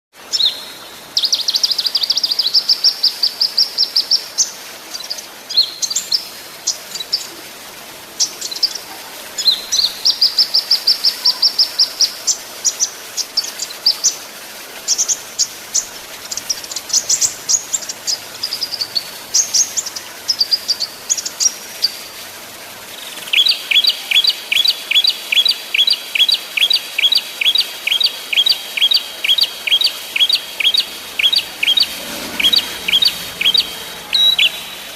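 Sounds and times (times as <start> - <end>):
songbirds trilling: 0.3 - 34.9
quick downward-slurred bird notes: 28.3 - 34.9.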